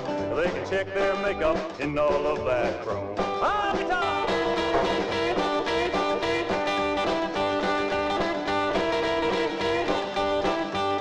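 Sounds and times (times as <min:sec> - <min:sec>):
backing band with steady beat: 0:00.0 - 0:11.0
guitar solo: 0:03.0 - 0:11.0.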